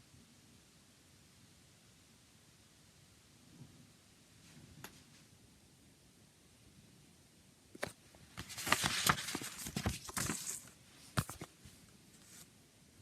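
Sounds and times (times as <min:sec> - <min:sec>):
booklet rustling: 0:07.8 - 0:12.5.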